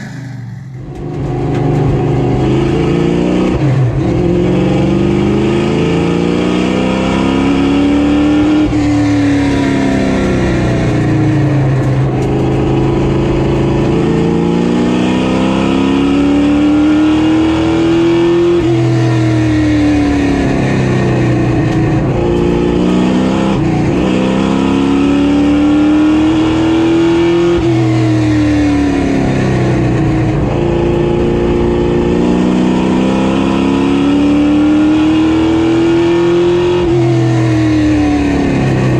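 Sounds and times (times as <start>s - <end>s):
race car engine revving: 0.0s - 10.7s.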